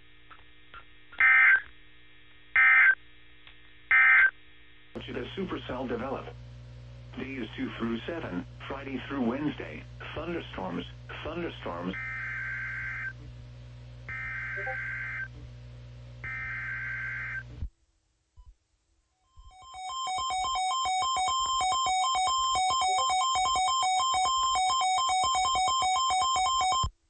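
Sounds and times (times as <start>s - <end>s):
two-pitch electronic alert tone: 14.2s - 15.2s.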